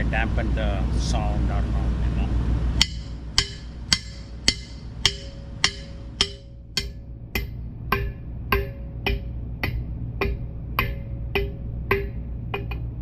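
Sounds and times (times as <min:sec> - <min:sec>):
hammer clanking on anvil: 0:02.8 - 0:12.8.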